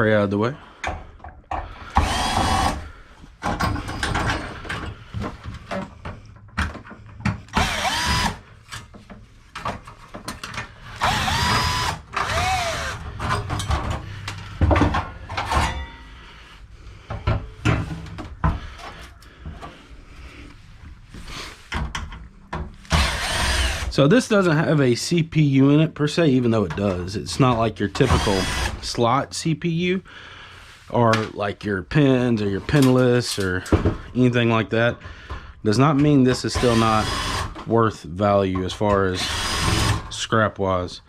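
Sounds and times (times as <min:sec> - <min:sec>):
cordless drill whining: 0:01.9 - 0:02.8, 0:07.5 - 0:08.4, 0:10.9 - 0:13.2, 0:22.9 - 0:23.9, 0:28.0 - 0:28.9, 0:36.6 - 0:37.6, 0:39.2 - 0:40.0
clatter of metal parts: 0:12.1 - 0:16.1.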